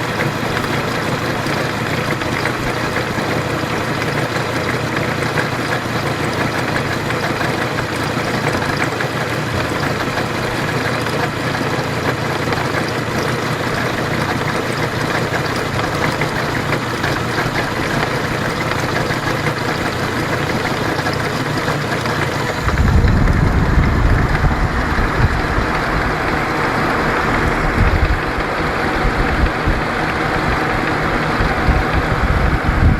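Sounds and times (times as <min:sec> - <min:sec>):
car engine idling with knock: 0:00.0 - 0:32.9
heavy low rumble: 0:21.4 - 0:32.9.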